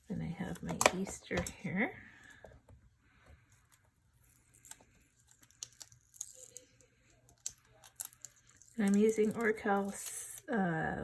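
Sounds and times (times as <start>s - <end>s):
transfer tape crinkling: 3.6s - 10.5s.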